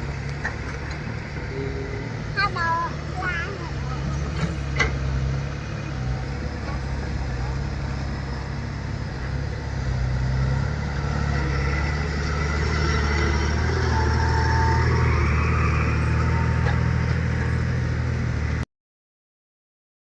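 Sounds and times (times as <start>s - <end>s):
engine whine: 0.0s - 18.6s
heavy machine engine running: 0.0s - 18.6s.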